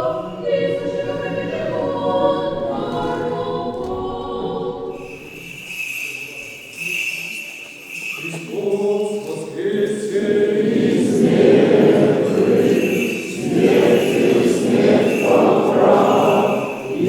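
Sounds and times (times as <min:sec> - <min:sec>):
voices singing: 0:00.0 - 0:17.0
small bells jingling: 0:04.9 - 0:17.0.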